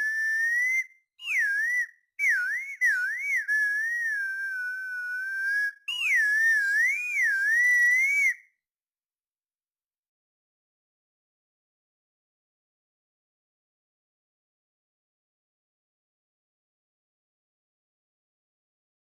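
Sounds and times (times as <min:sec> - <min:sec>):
wavering whistle-like tone: 0:00.0 - 0:08.4.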